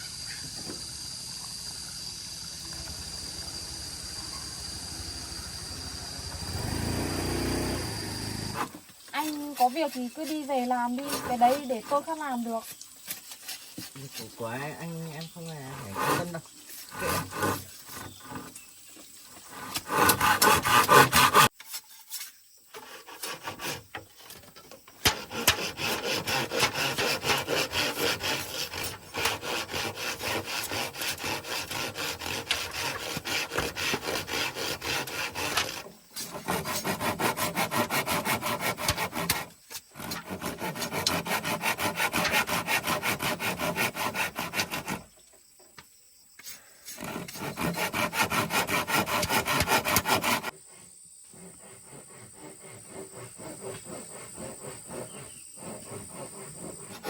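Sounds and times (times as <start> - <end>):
tool scraping on wood: 6.5 - 45.2, 46.4 - 57.0.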